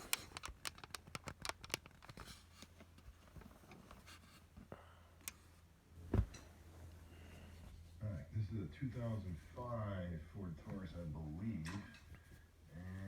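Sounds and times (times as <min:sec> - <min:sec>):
light clicks and taps: 0:00.0 - 0:05.4.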